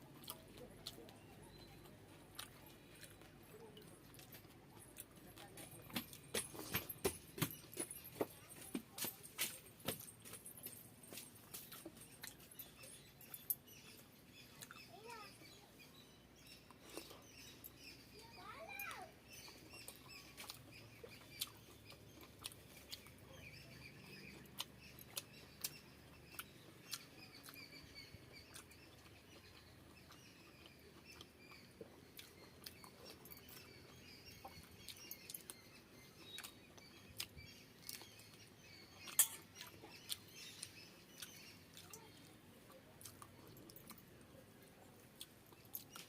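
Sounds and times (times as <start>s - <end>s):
person chewing with wet smacks: 0.0s - 6.6s, 19.4s - 46.0s.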